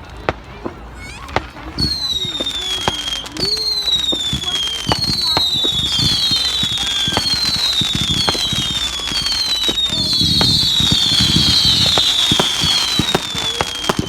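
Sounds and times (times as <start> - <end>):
firework cracks and pops: 0.0 - 14.0
firework whistles: 0.0 - 14.0.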